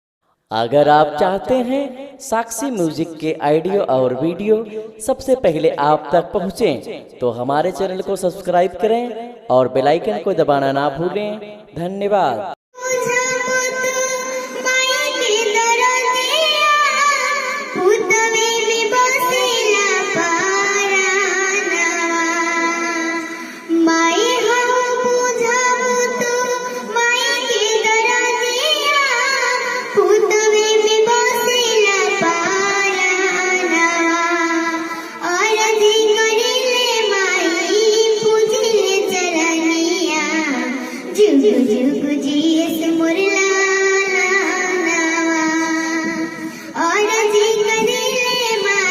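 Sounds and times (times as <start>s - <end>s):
girl singing: 12.8s - 48.9s.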